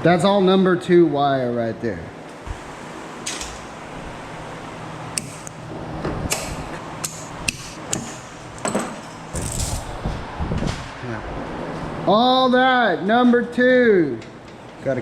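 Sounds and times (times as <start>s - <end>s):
steady low hum: 0.9s - 15.0s
wire creaking and rubbing on metal: 7.6s - 10.1s.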